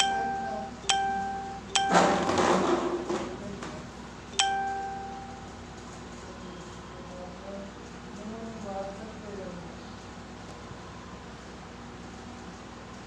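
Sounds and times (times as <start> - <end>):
bell-like chime ringing: 0.0 - 2.5, 4.4 - 5.5.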